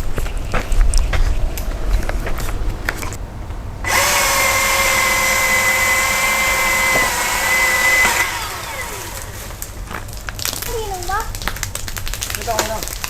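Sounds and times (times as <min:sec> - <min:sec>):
electric chainsaw whine: 0:01.6 - 0:10.2.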